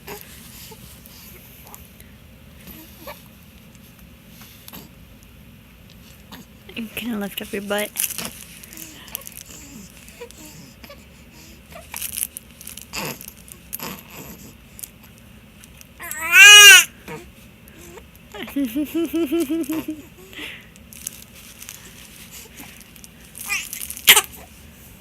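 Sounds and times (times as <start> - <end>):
infant whimpering: 8.7 - 11.9, 23.4 - 24.5
infant crying: 16.0 - 17.2, 23.4 - 24.4.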